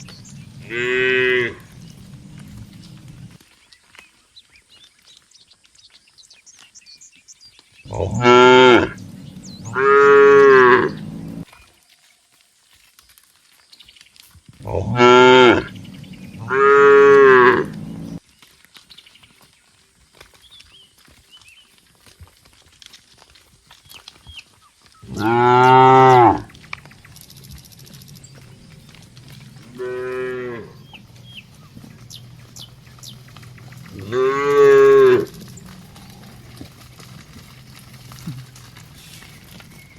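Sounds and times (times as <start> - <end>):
cattle mooing: 0.0 - 3.3, 7.9 - 11.4, 14.6 - 18.2, 25.0 - 26.6, 27.8 - 37.7.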